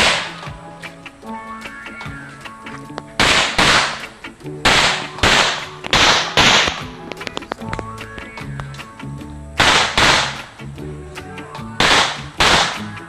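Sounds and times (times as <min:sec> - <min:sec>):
pistol shots: 0:00.0 - 0:00.4, 0:03.2 - 0:04.1, 0:04.7 - 0:06.9, 0:09.6 - 0:10.4, 0:11.8 - 0:12.9.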